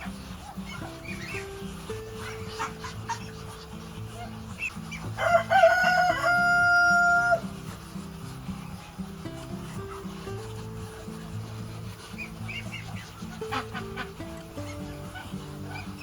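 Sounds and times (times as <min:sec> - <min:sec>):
background music: 0:00.0 - 0:16.0
chicken clucks and chirps: 0:00.0 - 0:16.0
rooster crowing: 0:05.2 - 0:07.5.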